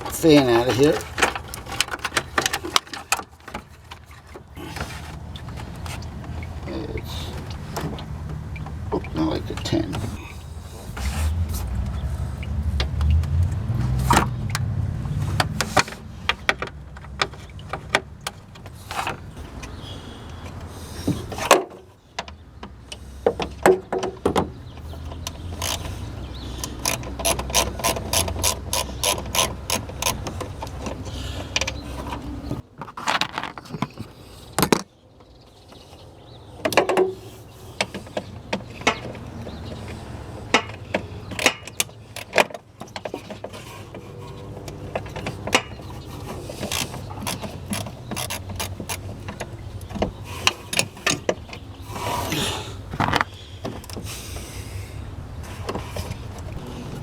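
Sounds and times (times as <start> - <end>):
tools and parts clunking: 0.0 - 19.8, 20.4 - 35.9, 36.6 - 54.7
socket ratchet clicking: 26.6 - 30.4.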